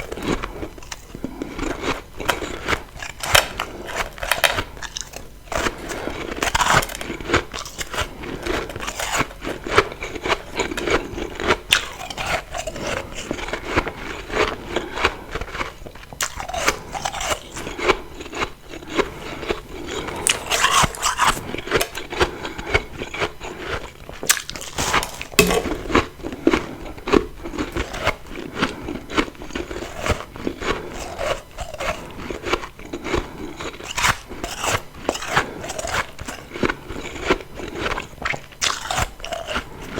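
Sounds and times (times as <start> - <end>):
teeth crunching ice: 0.1 - 39.9.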